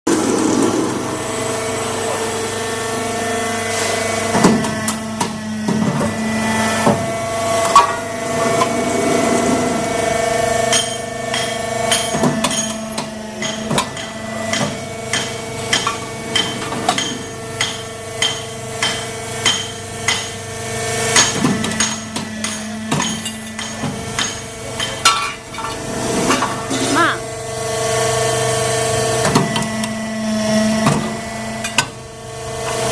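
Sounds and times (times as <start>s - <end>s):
machine humming: 0.1s - 32.9s
press clanking on metal: 10.7s - 20.4s.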